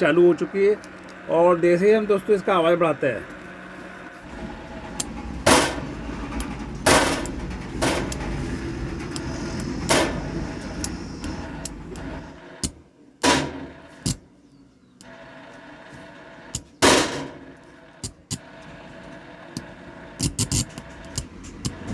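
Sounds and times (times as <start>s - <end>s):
low rumbling noise: 0.0s - 12.6s.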